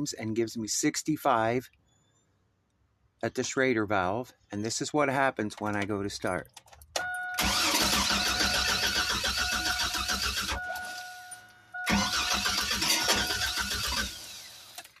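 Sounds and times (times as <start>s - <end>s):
engine cranking on starter: 7.4s - 11.2s, 11.9s - 15.0s.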